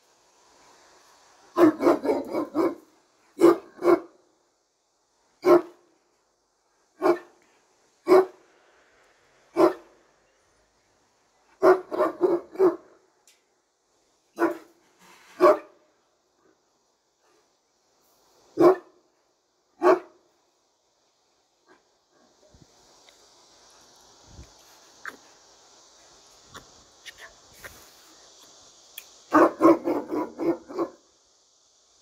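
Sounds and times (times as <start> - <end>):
large dog barking: 1.5 - 4.3, 5.4 - 5.9, 7.0 - 7.4, 8.0 - 8.4, 9.5 - 10.0, 11.6 - 13.0, 14.4 - 14.8, 15.4 - 15.8, 18.6 - 19.0, 19.8 - 20.2, 29.3 - 31.0.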